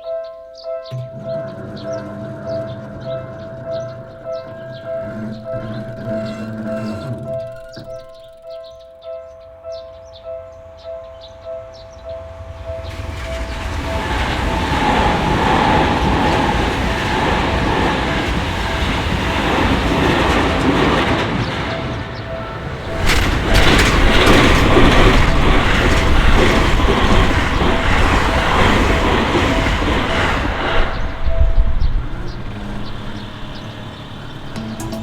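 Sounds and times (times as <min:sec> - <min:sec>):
train running past: 0:00.9 - 0:08.4, 0:10.6 - 0:35.0
crossing warning bell ringing: 0:11.8 - 0:35.0.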